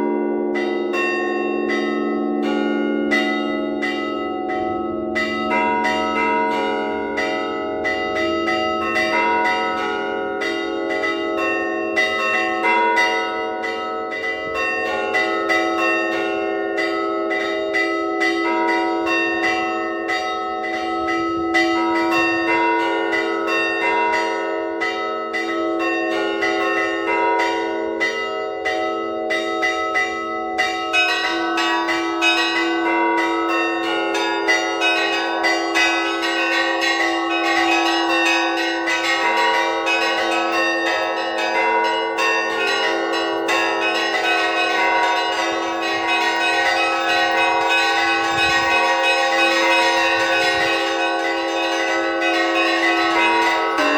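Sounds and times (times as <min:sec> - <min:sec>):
low bells ringing: 0:00.0 - 0:53.9
small bells struck quickly: 0:52.3 - 0:53.9.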